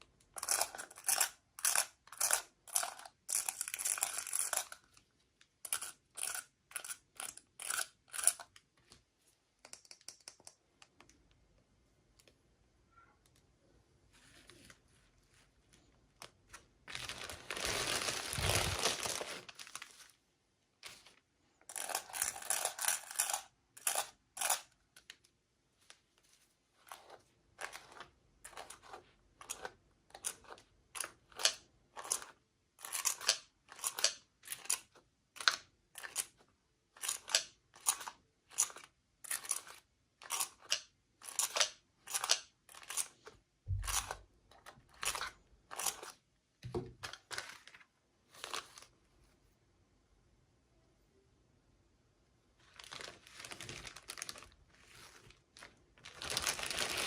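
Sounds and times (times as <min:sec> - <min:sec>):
packaging tearing and rustling: 0:16.9 - 0:20.1, 0:52.7 - 0:57.0.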